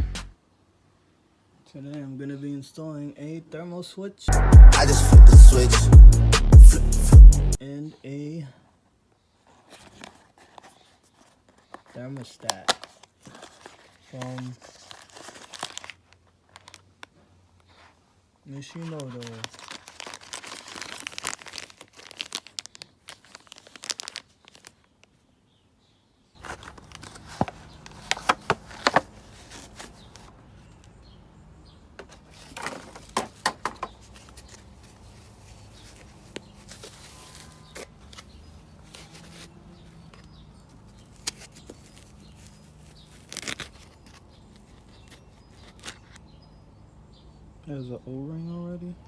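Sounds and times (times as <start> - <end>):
packaging crinkling and tearing: 9.6 - 17.9, 18.5 - 25.2, 26.4 - 30.9, 34.0 - 46.2.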